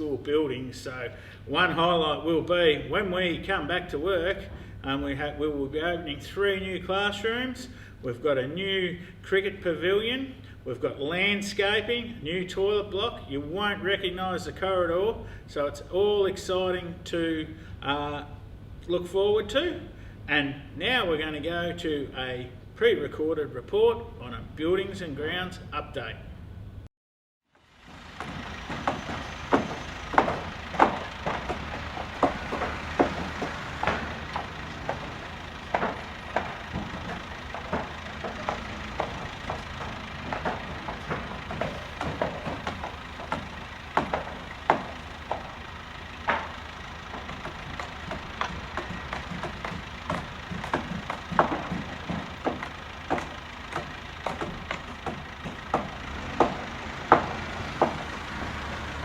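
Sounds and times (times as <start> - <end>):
engine rumble: 0.0 - 22.8, 27.5 - 59.0
sharp knocks and bangs: 27.7 - 59.0.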